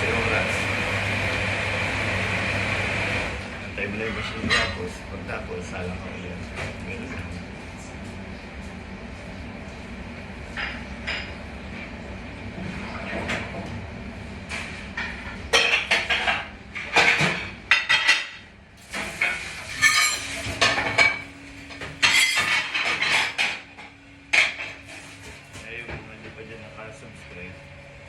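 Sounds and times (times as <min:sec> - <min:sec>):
steady background hum: 0:00.0 - 0:28.0
plates and metal clattering: 0:15.6 - 0:23.7.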